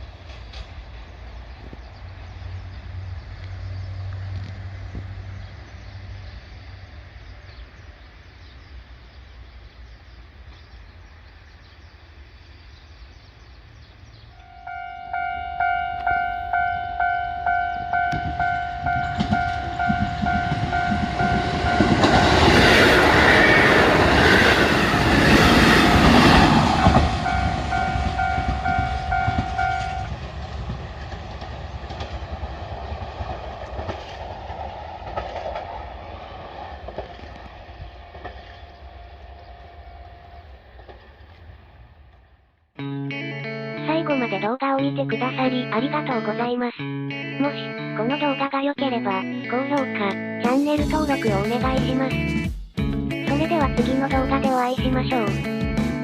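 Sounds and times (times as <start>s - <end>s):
electric train rumbling: 0.0s - 42.6s, 49.9s - 56.0s
level crossing bell dinging: 14.4s - 22.6s, 26.8s - 30.1s
train wheels clacking on rails: 14.7s - 38.9s.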